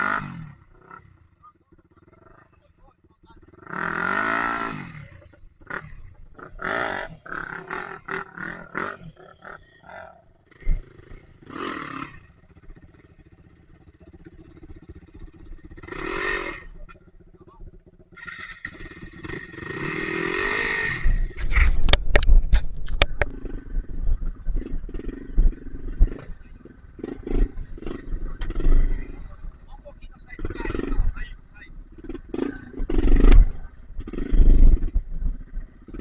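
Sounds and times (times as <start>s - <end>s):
dirt bike engine revving: 0.0s - 1.2s, 3.4s - 22.3s, 23.0s - 36.0s
sharp knocks: 21.9s - 23.3s.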